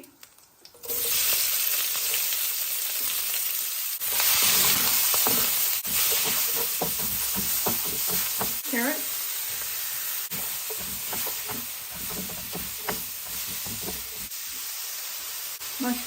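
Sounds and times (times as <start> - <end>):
vegetables sizzling in hot oil: 0.0 - 16.0
utensil scraping a pan: 4.0 - 14.5.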